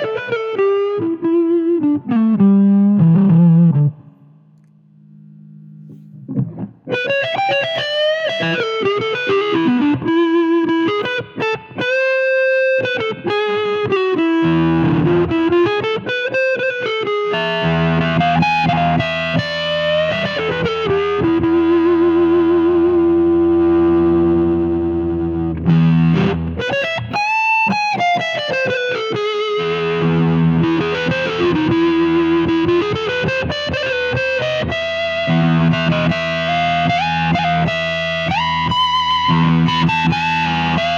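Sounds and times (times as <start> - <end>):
fuzzy electric guitar lead: 0.0 - 40.9
low sustained guitar chords: 11.8 - 40.9.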